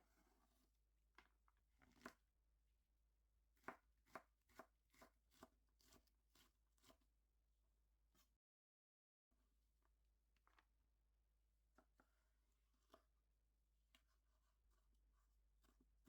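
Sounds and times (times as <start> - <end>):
knife chopping on cutting board: 3.6 - 6.0.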